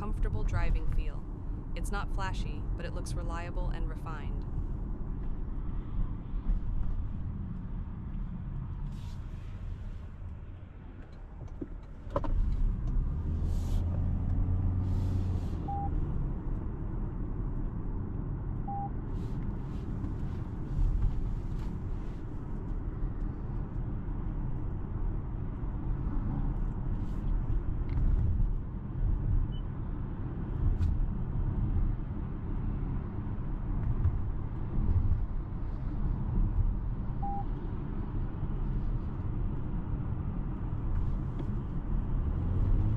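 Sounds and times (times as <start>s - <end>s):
car cabin road rumble: 0.0s - 42.9s
faint short beeps: 37.2s - 37.5s.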